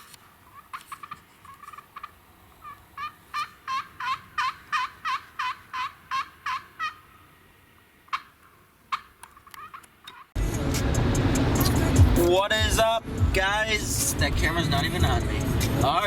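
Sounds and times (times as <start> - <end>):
turkey yelps: 0.4 - 7.4, 8.1 - 10.2.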